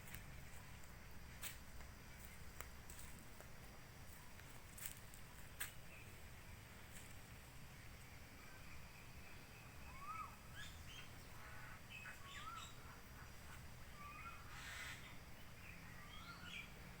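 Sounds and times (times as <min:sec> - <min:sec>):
birds whistling and chirping: 0:09.5 - 0:12.8, 0:13.9 - 0:16.8
harsh bird call: 0:14.0 - 0:15.1.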